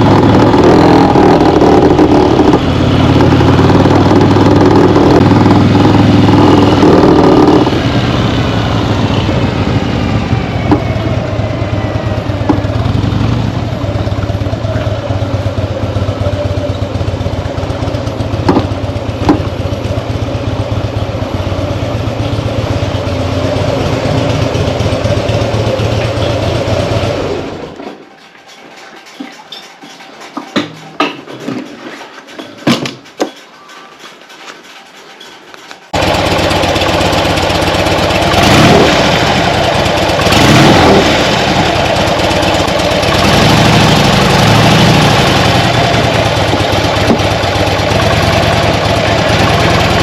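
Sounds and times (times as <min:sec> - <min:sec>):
motorcycle engine running: 0:00.0 - 0:27.8, 0:35.9 - 0:50.0.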